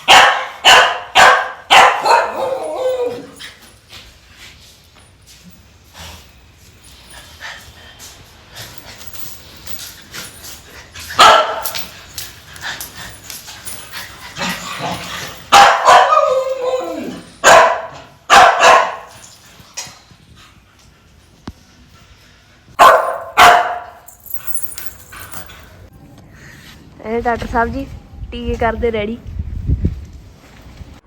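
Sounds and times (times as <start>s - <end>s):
dog barking: 0.0s - 2.9s, 11.2s - 11.8s, 15.5s - 16.5s, 17.4s - 19.1s, 22.8s - 24.0s.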